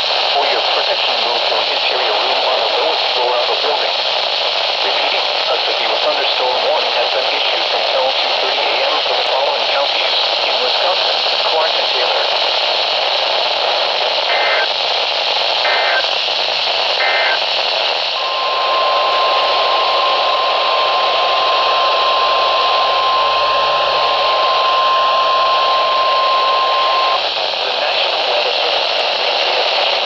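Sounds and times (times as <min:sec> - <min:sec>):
radio static hiss: 0:00.0 - 0:30.0
bursts of digital header data: 0:14.3 - 0:14.7, 0:15.6 - 0:16.1, 0:17.0 - 0:17.4
steady warning alarm tone: 0:15.7 - 0:16.1, 0:17.0 - 0:17.4, 0:18.2 - 0:27.2.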